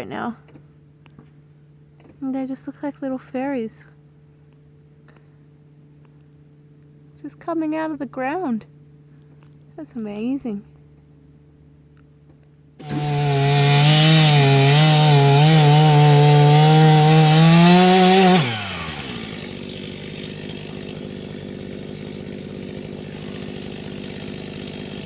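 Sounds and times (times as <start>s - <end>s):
chainsaw running: 12.8s - 25.0s.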